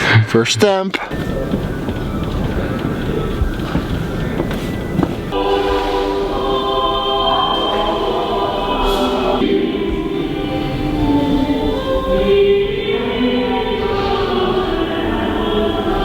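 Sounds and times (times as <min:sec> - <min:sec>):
choir-like singing music: 0:01.1 - 0:16.0.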